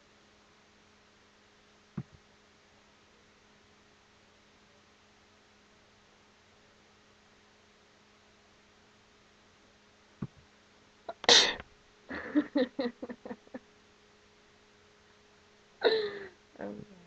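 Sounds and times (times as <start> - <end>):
person sneezing loudly: 11.1 - 11.6.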